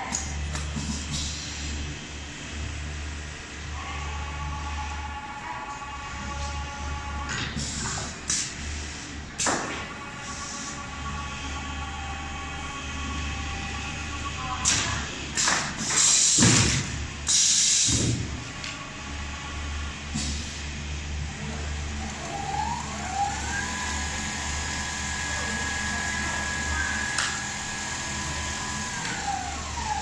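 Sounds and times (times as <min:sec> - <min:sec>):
motor whine: 0:21.2 - 0:30.0
sewing machine humming: 0:21.2 - 0:30.0
loud noisy bursts: 0:21.6 - 0:30.0.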